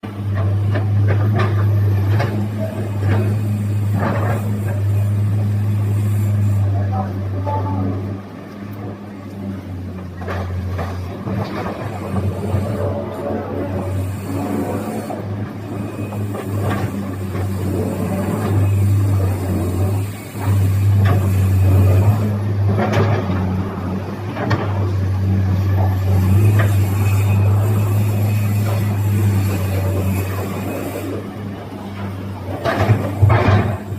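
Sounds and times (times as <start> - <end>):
excavator engine hum: 0.0 - 33.9.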